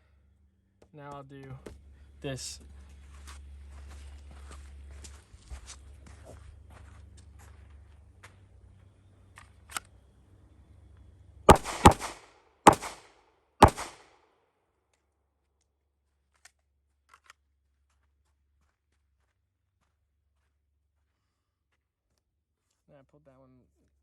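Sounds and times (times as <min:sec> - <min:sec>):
handgun shots with echo: 0:11.5 - 0:14.1.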